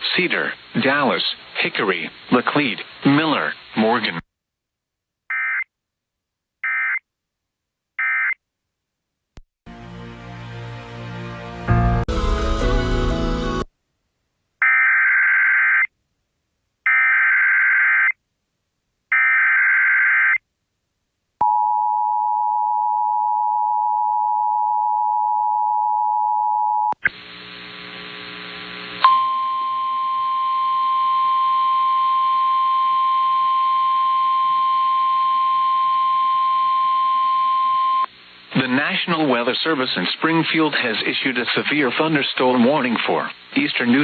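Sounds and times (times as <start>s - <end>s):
radio hum: 27.0s - 29.1s.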